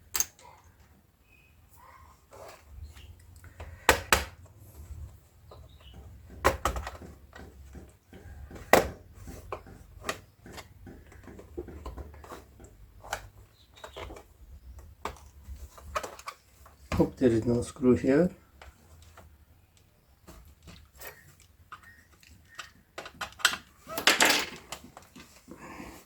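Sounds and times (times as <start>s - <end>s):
plastic clips snapping: 0.1s - 0.5s.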